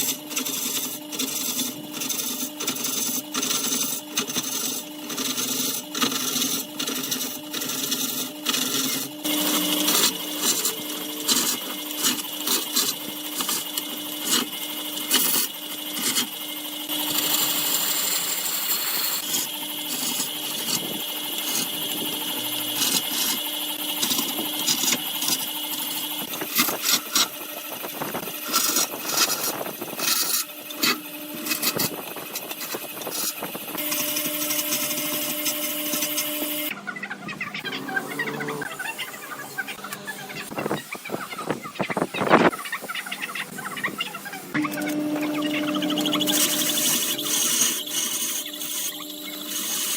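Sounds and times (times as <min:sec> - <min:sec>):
turning tool scraping wood: 0:00.0 - 0:36.8, 0:37.5 - 0:49.9
wood lathe humming: 0:00.0 - 0:36.8, 0:37.5 - 0:49.9.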